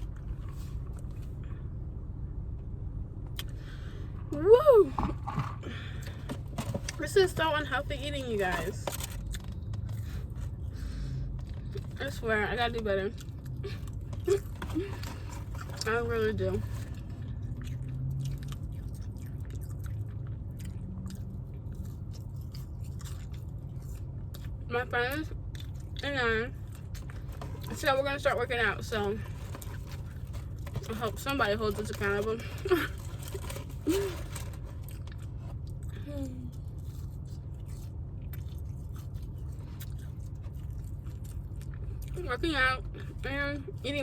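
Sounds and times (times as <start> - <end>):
steady low hum: 0.0 - 44.0
close-up chewing food: 12.7 - 42.2.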